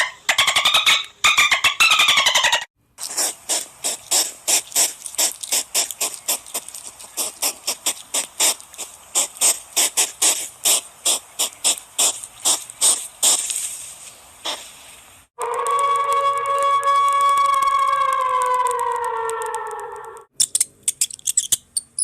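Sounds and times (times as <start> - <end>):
animal high-pitched chirps: 0.0 - 2.7, 18.8 - 22.0
faint hiss: 2.9 - 15.3.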